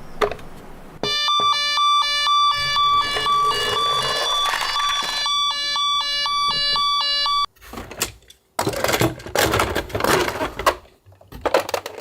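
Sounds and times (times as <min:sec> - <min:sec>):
toy two-tone siren: 0:01.0 - 0:07.5.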